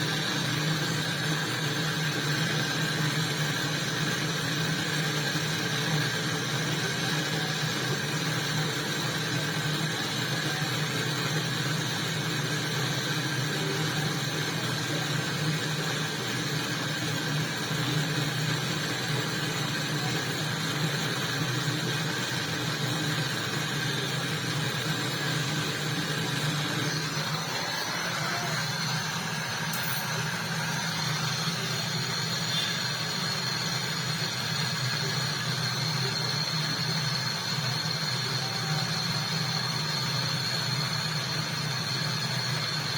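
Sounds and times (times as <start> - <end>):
electric motor humming: 19.0 - 35.8.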